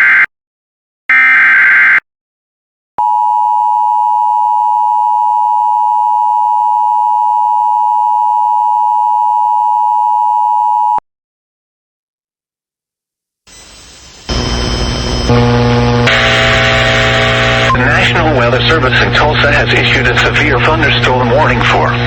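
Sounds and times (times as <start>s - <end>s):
buzzy digital data burst: 13.5s - 18.0s.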